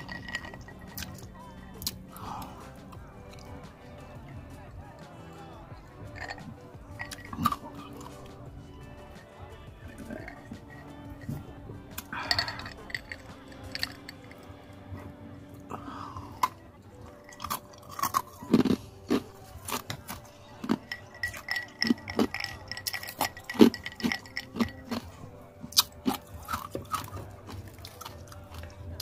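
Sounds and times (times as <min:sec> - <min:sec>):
person chewing and crunching: 0:00.0 - 0:03.6, 0:06.1 - 0:08.4, 0:09.8 - 0:29.0
restaurant background ambience: 0:00.0 - 0:29.0
mouth clicks: 0:25.6 - 0:27.2.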